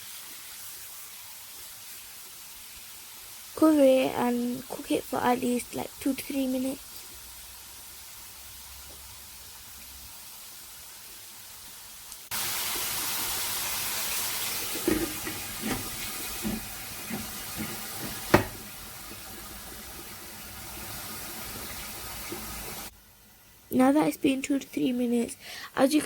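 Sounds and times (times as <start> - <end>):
meat sizzling in a frying pan: 0.0 - 26.0
light knocks: 14.8 - 18.7.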